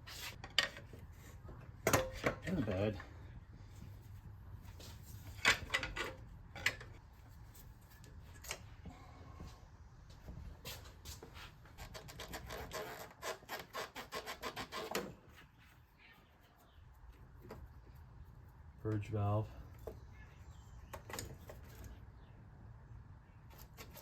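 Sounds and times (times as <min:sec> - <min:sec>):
tools clicking and scraping: 0:05.2 - 0:07.0, 0:23.5 - 0:24.0.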